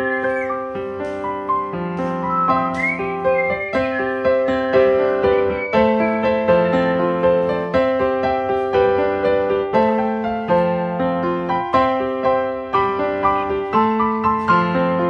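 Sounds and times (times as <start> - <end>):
gentle piano music: 0.0 - 15.0
short rising whistle: 2.3 - 6.4.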